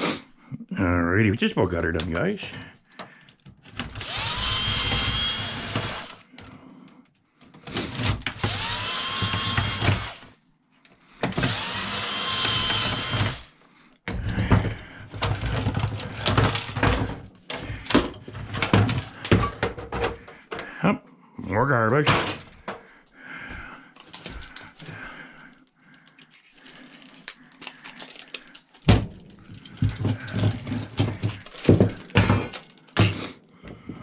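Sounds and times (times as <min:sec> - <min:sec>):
power drill whining: 0:03.8 - 0:06.6, 0:07.8 - 0:10.4, 0:11.2 - 0:13.6
loose parts rattling: 0:14.1 - 0:20.7, 0:26.1 - 0:33.3.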